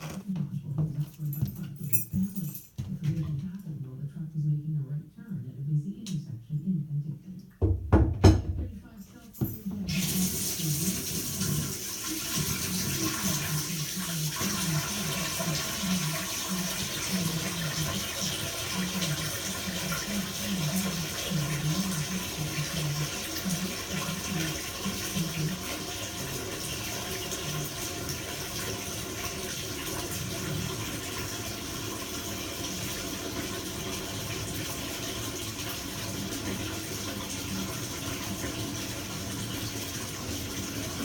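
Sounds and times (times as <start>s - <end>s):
tap water running: 9.4s - 41.0s.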